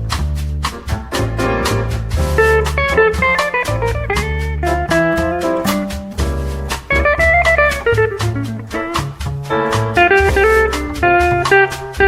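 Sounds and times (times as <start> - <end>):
plucked guitar-like melody: 0.0 - 12.0
upbeat jazzy music: 0.0 - 12.0.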